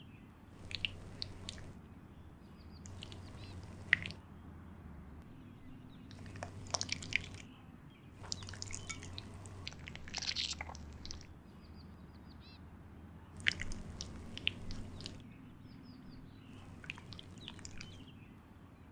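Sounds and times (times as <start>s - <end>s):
wet sticky squelching: 0.6s - 1.8s, 2.8s - 4.2s, 6.1s - 7.4s, 8.2s - 11.3s, 13.4s - 15.2s, 16.6s - 18.0s.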